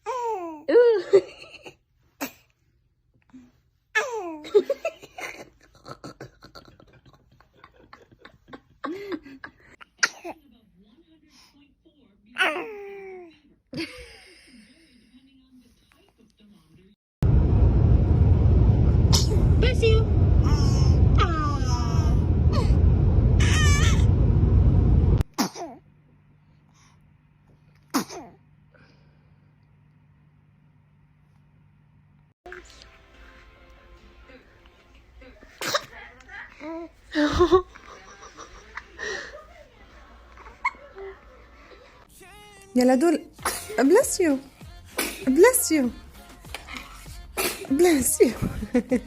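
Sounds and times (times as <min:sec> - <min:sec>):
baby sneezing: 0:09.8 - 0:10.4, 0:27.9 - 0:28.4, 0:35.6 - 0:36.0, 0:43.4 - 0:43.8, 0:44.9 - 0:45.3, 0:47.4 - 0:47.7
loud low rumble: 0:17.2 - 0:25.3
baby crying: 0:23.4 - 0:24.1.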